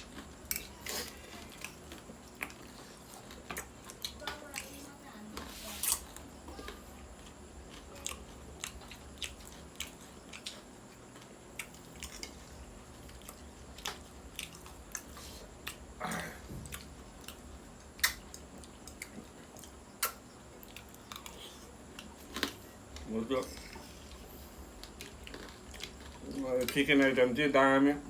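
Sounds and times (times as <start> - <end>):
person chewing crunchy chicken: 0.0 - 4.8, 5.4 - 26.8.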